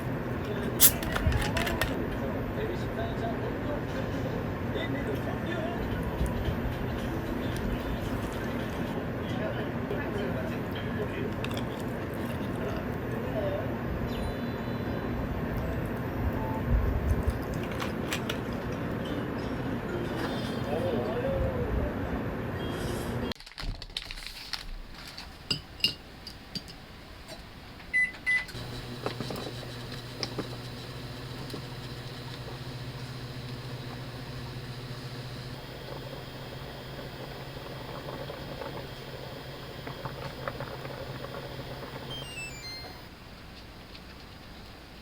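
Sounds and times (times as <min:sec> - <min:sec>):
microwave oven humming: 0:00.0 - 0:23.3, 0:27.5 - 0:45.0
short keypad beeps: 0:42.1 - 0:43.0.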